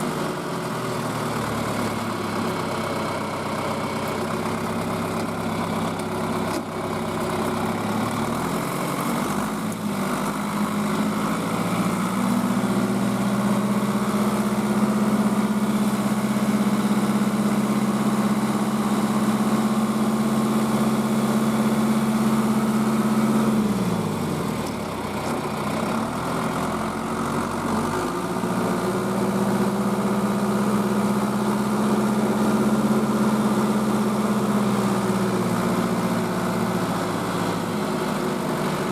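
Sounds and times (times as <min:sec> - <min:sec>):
vehicle engine running: 0:00.0 - 0:38.9.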